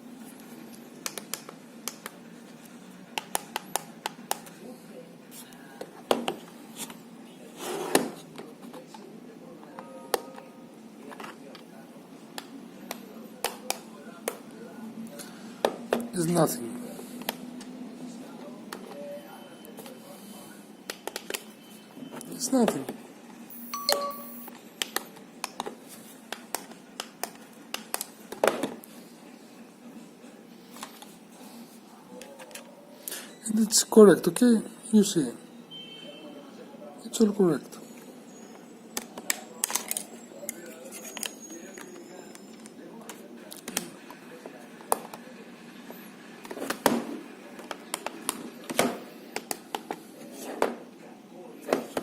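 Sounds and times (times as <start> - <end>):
faint steady hum: 23.1 - 25.0
brief steady tone: 23.5 - 24.5.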